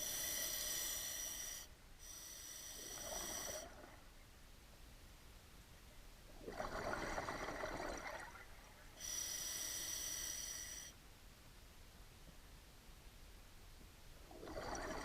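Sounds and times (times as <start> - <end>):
diver breathing through regulator: 0.0 - 3.8.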